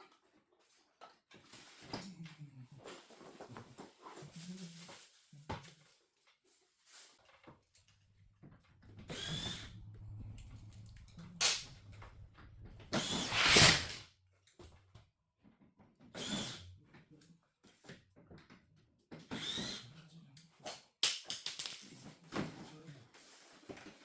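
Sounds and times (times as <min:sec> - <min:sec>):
low steady hum: 0:07.8 - 0:13.3
small electric power tool: 0:09.0 - 0:09.8, 0:12.9 - 0:14.0, 0:16.2 - 0:16.6, 0:19.3 - 0:19.8.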